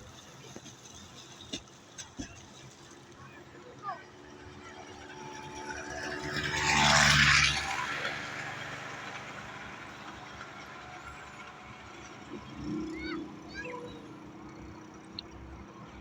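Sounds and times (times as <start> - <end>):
vehicle passing by: 4.0 - 16.0.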